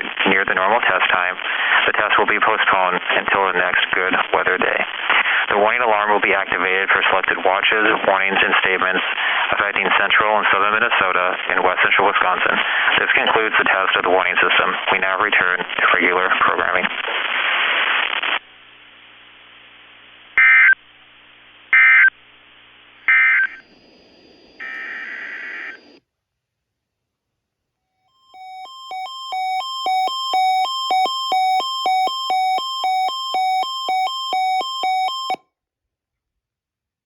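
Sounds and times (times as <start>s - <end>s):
digital data burst screeches: 23.1s - 23.6s
rapid two-tone electronic beeping: 23.1s - 26.0s, 28.4s - 35.4s.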